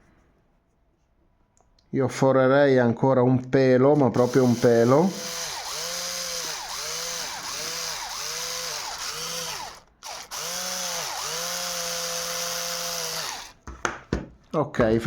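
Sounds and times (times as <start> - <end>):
electric drill boring: 4.0 - 13.6.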